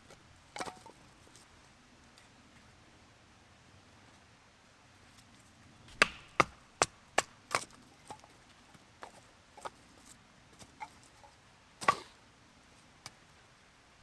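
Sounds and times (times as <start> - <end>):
light cracks of wood: 5.9 - 7.8
wood chopping knocks: 5.9 - 7.8.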